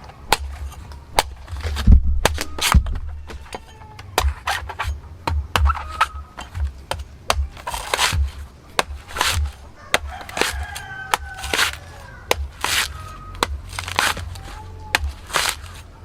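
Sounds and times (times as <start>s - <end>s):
chopping and scraping coconut husk: 0.0s - 16.0s.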